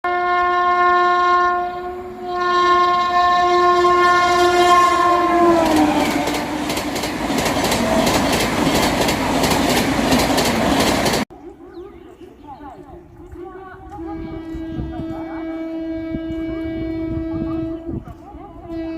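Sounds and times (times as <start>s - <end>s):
train horn blasts: 0.0s - 6.9s, 13.9s - 18.0s, 18.6s - 18.9s
train passing at high speed: 1.5s - 11.2s
wheels clacking over rail joints: 5.5s - 11.2s.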